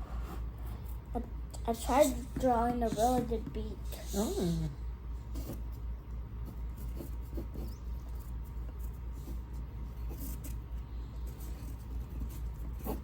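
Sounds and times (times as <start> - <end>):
steady low hum: 0.0 - 13.0
pencil scratching on paper: 6.4 - 13.0.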